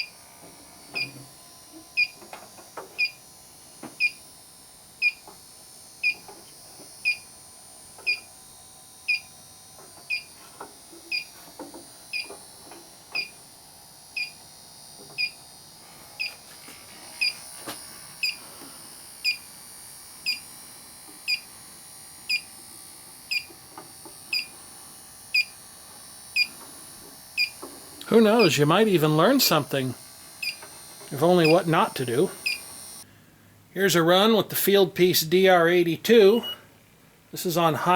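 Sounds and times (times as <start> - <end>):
leak detector short high beeps: 2.0 - 2.2, 7.0 - 7.2, 9.1 - 9.3, 14.2 - 14.4, 24.3 - 24.5, 32.4 - 32.6, 36.4 - 36.7.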